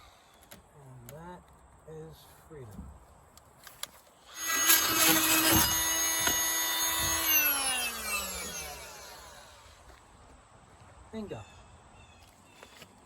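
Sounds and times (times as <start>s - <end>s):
tool motor winding down: 4.3s - 9.8s
multi-tool cutting plywood: 4.3s - 9.9s.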